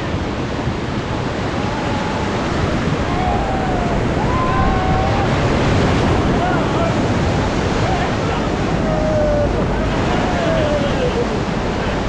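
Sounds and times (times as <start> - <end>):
white water rushing: 0.0 - 12.0
faint voices calling out: 6.2 - 12.0.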